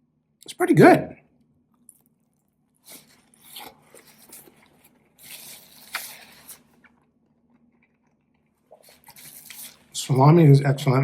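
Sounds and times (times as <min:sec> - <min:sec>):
person chewing food: 0:01.6 - 0:10.0.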